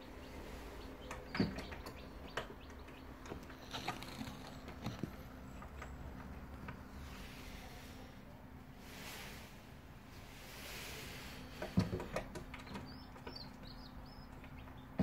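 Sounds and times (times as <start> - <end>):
chicks chirping: 0.0 - 5.1, 12.4 - 15.0
incubator humming: 0.0 - 15.0
chicks tapping: 0.2 - 6.8, 11.6 - 15.0.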